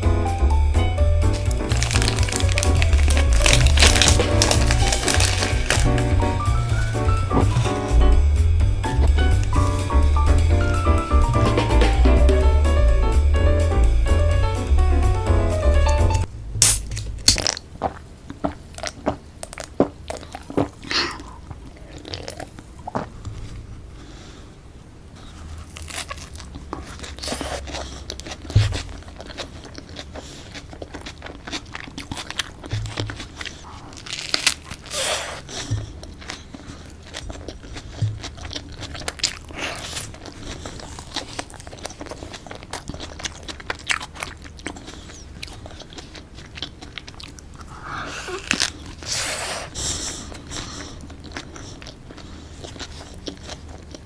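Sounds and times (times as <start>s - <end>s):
crunchy chewing: 1.3s - 24.2s, 25.2s - 54.0s
soft low knocks: 6.0s - 16.6s.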